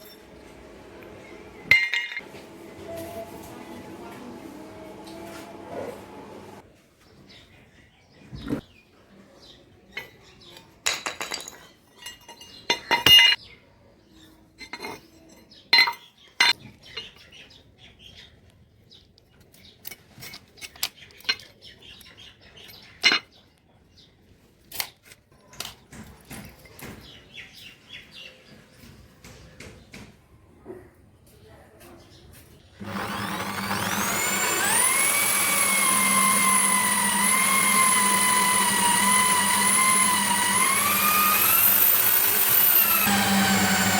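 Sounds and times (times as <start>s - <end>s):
metal tools clinking: 0.0s - 0.4s, 10.9s - 13.4s.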